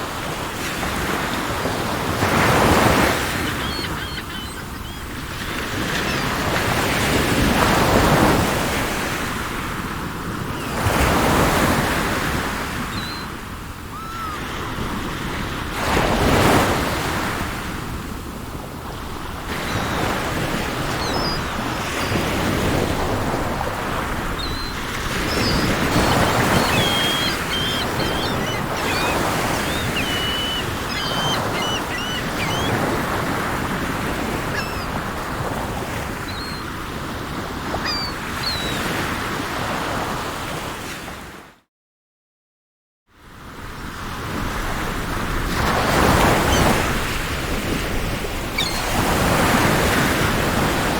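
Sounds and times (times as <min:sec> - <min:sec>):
sea waves breaking: 0:00.0 - 0:40.1, 0:44.7 - 0:50.9
small birds chirping: 0:02.8 - 0:06.6, 0:19.6 - 0:22.5, 0:24.3 - 0:35.0, 0:36.2 - 0:36.7, 0:37.7 - 0:38.8, 0:48.6 - 0:48.9.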